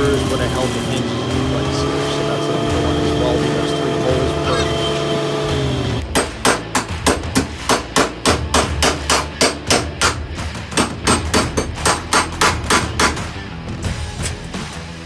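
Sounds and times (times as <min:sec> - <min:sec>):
hammer striking steel: 0:06.0 - 0:13.4.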